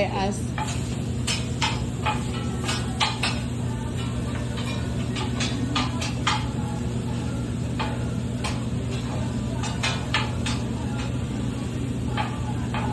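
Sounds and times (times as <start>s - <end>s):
steady low hum: 0.0s - 12.9s.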